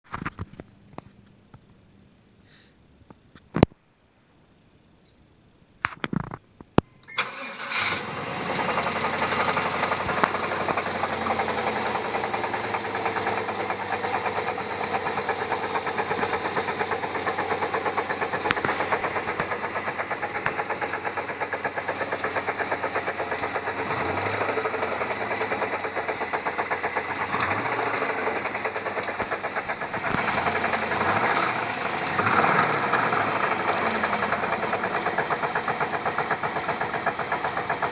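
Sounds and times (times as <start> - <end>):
engine revving: 7.2 - 37.9
engine running with knock: 7.9 - 37.9.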